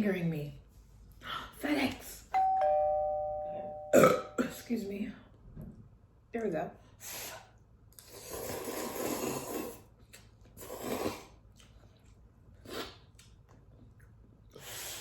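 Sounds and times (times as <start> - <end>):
noodles being slurped: 8.0 - 11.8.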